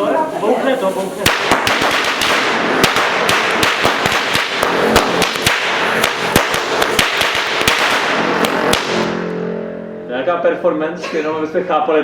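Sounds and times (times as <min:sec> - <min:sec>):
firecrackers banging: 0:00.8 - 0:09.4.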